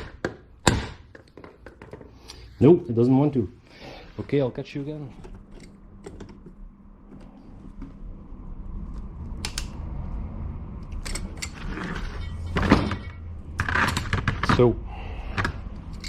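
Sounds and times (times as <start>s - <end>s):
low background hum: 0.0s - 16.0s
metal parts clicking: 10.8s - 14.6s, 15.3s - 16.0s.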